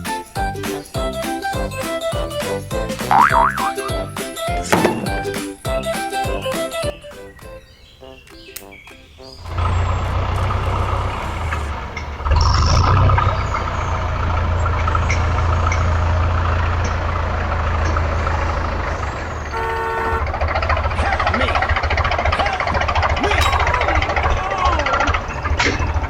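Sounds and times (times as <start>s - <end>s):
tractor engine running: 0.0s - 6.4s, 9.4s - 26.0s
horn toot: 19.5s - 20.4s.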